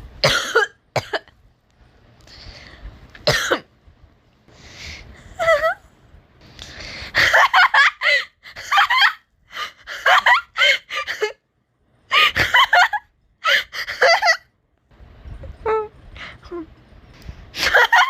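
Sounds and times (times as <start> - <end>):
person laughing hard: 5.4 - 5.8, 7.2 - 9.2, 9.8 - 11.4, 17.6 - 18.0.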